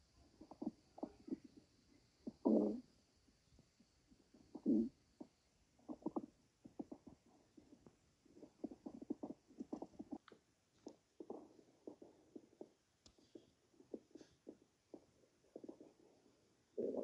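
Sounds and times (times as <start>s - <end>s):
stomach gurgling: 0.0s - 3.0s, 3.6s - 17.0s.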